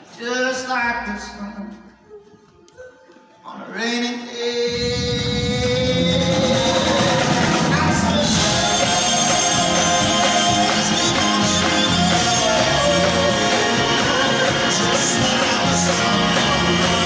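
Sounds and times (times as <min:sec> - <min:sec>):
guitar: 0:04.8 - 0:17.0
live rock band playing: 0:05.4 - 0:17.0.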